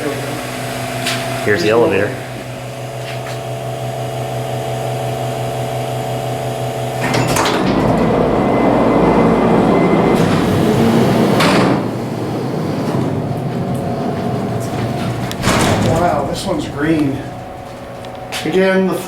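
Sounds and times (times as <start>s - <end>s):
elevator doors running: 0.0s - 19.0s
machine hum: 0.0s - 19.0s
elevator doors clunking: 6.2s - 19.0s.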